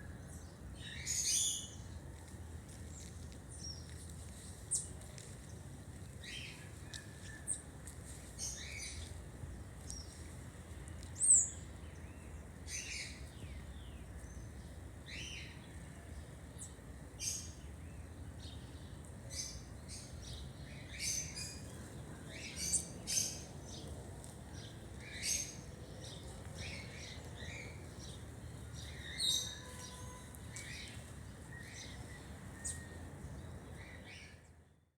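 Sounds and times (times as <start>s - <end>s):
birds chirping and calling: 19.3s - 23.9s, 24.6s - 28.2s, 28.8s - 33.0s.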